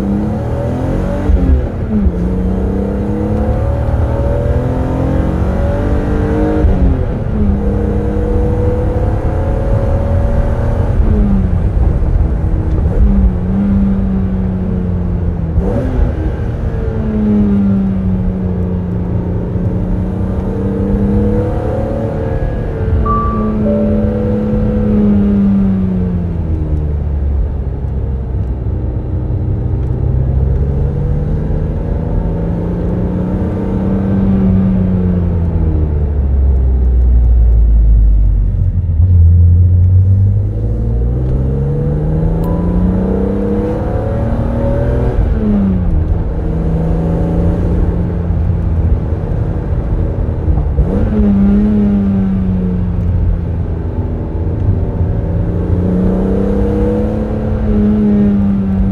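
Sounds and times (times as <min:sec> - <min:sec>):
car engine revving: 0:00.0 - 0:13.8, 0:38.6 - 0:53.4, 0:54.2 - 0:58.9.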